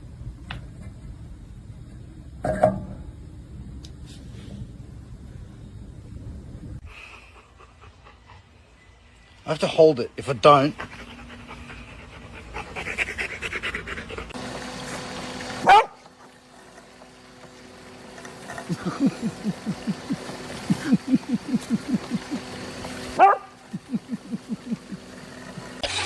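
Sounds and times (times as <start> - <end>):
dog panting: 6.9 - 9.0, 10.3 - 14.4.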